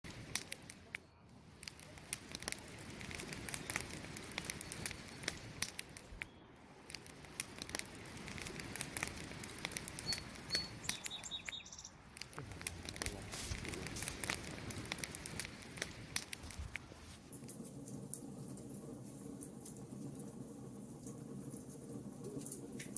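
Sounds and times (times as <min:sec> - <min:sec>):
campfire crackling and popping: 0:00.0 - 0:22.9
low rush of burning: 0:00.0 - 0:22.9.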